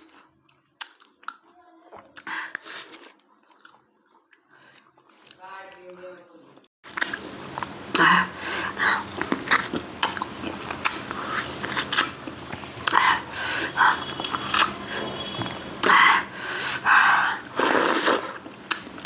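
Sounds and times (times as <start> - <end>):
person chewing food: 0.0 - 5.4, 6.9 - 19.0
wet mouth clicks: 9.0 - 14.8, 17.6 - 19.0.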